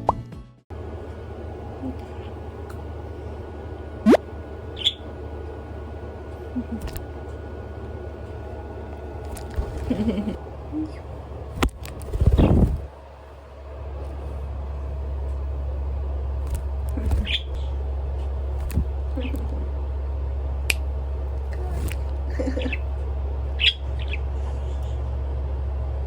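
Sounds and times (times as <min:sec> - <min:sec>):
steady low hum: 0:00.7 - 0:26.0
budgerigars chirping: 0:00.9 - 0:12.9, 0:16.6 - 0:17.8, 0:21.9 - 0:24.7.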